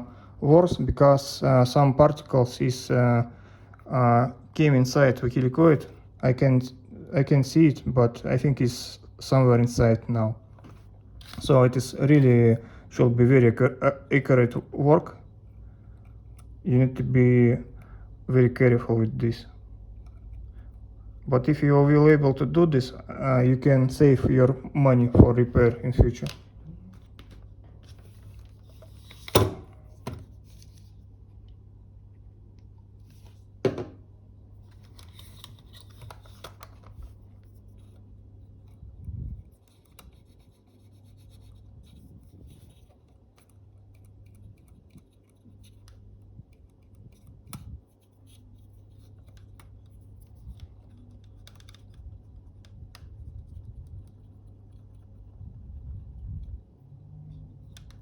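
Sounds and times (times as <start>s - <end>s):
steady low hum: 0.0s - 58.0s
faint scratching and rubbing: 35.0s - 45.8s.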